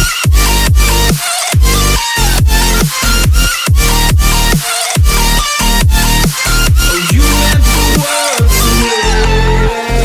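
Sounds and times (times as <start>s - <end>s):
electronic dance music: 0.0s - 10.0s
person singing: 6.9s - 10.0s.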